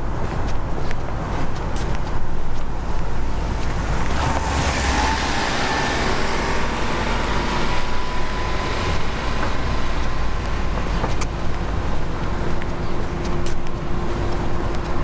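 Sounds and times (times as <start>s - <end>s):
road traffic passing: 0.0s - 15.0s
vehicle passing by: 2.8s - 12.6s.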